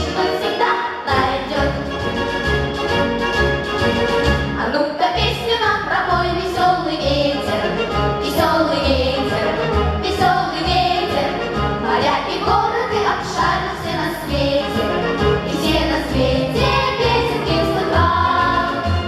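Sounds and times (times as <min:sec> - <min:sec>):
group singing in unison: 0:00.0 - 0:01.8, 0:06.0 - 0:19.0
instrumental accompaniment with bass beat: 0:01.6 - 0:04.6.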